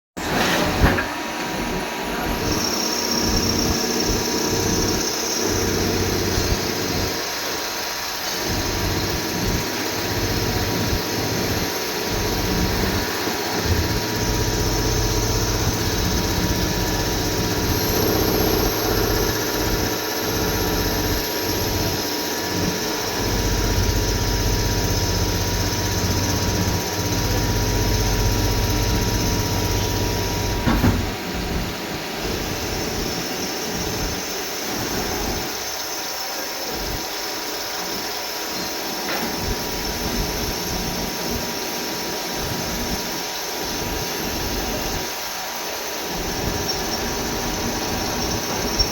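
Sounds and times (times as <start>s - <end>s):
machinery high whine: 0.6s - 48.9s
motor hum: 8.1s - 33.2s, 46.1s - 48.9s.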